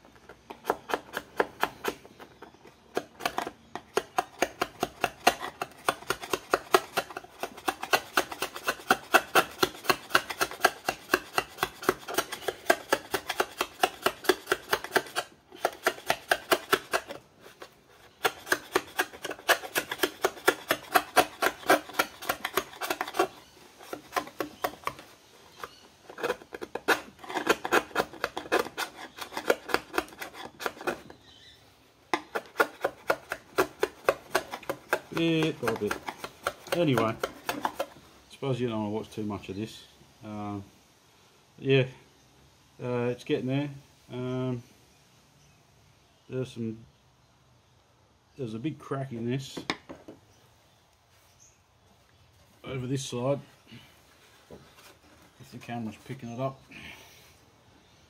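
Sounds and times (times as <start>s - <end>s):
chisel scraping paint off plastic: 0.1s - 31.3s, 32.2s - 38.0s.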